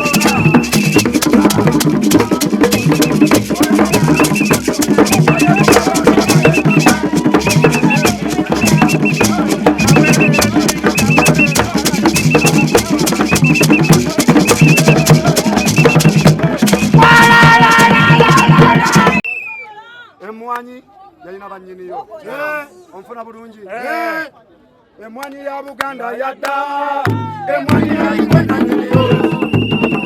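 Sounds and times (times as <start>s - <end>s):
drum ensemble: 0.0s - 19.2s, 27.1s - 30.0s
shakers and rattles: 0.0s - 19.2s.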